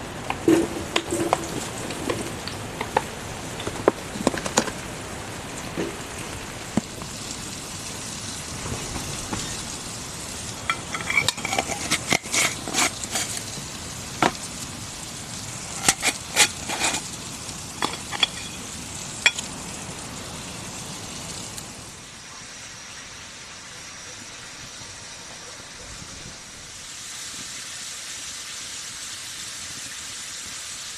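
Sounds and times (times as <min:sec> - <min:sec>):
food sizzling in a pan: 0:00.0 - 0:25.4, 0:26.0 - 0:30.9
utensil clinking against pan: 0:10.7 - 0:13.4, 0:17.8 - 0:18.6.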